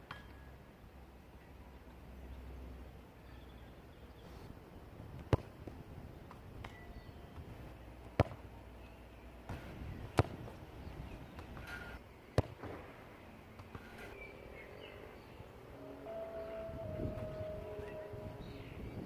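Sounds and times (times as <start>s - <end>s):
football being kicked: 5.3s - 5.5s, 8.2s - 8.4s, 9.5s - 10.6s, 12.4s - 12.8s.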